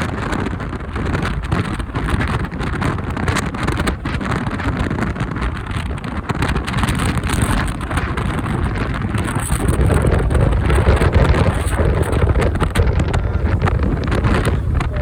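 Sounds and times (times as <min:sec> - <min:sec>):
road noise: 0:00.0 - 0:15.0
wind buffeting microphone: 0:00.0 - 0:15.0
motorcycle engine: 0:10.5 - 0:15.0.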